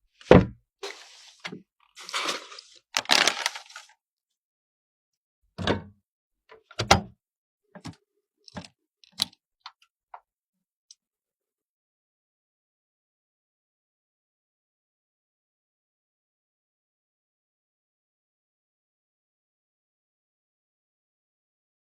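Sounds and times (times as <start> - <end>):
scraping or sliding sounds: 0.8 - 3.9.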